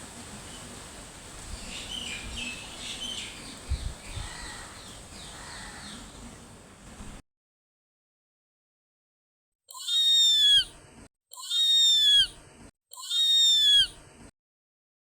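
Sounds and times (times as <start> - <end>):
bird-like chirping and twittering: 0.0 - 7.0, 9.7 - 10.7
steady background hiss: 0.0 - 7.2.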